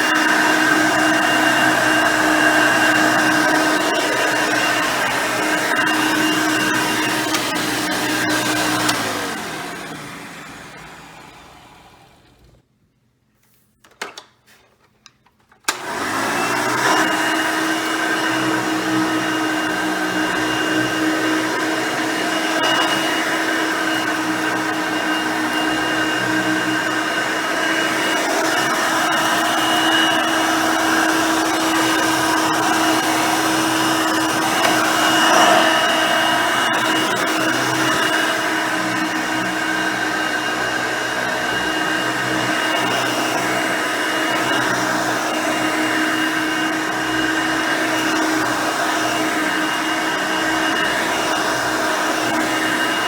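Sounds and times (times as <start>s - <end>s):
vacuum cleaner running: 0.0s - 12.6s, 15.6s - 53.0s.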